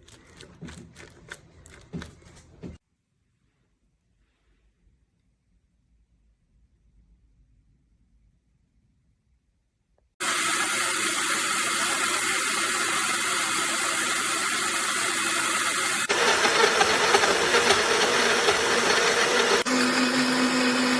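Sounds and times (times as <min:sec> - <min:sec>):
blender motor whirring: 0:10.2 - 0:20.9.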